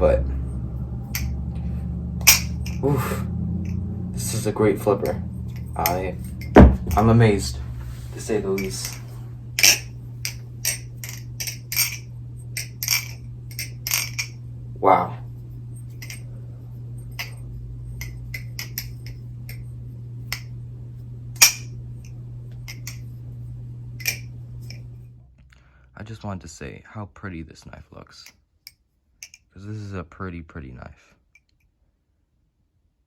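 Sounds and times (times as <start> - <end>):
steady low hum: 0.0 - 31.2
butterfly knife clacking: 2.2 - 2.9, 9.6 - 12.0.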